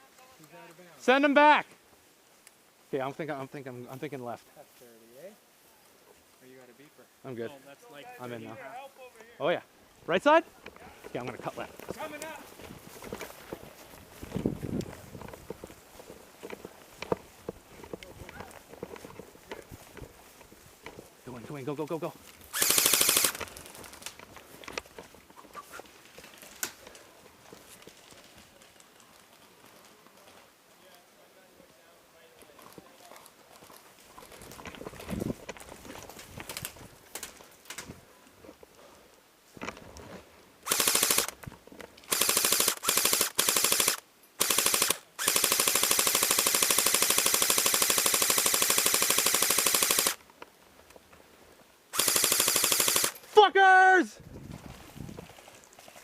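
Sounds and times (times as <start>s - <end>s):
footsteps: 7.9s - 22.7s, 23.3s - 31.0s, 31.7s - 40.5s, 53.1s - 56.0s
airsoft rifle firing bursts: 22.6s - 23.4s, 40.7s - 41.3s, 42.1s - 50.2s, 52.0s - 53.2s.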